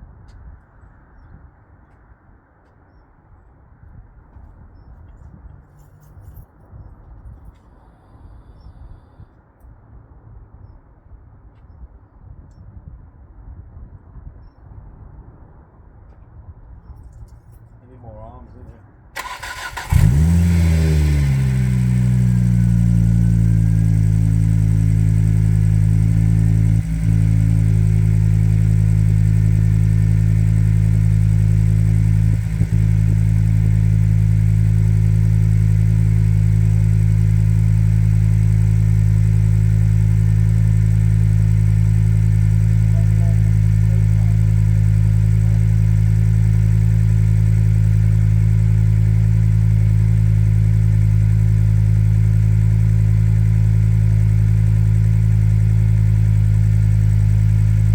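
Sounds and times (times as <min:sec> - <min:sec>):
petrol engine idling: 0:19.2 - 0:57.9.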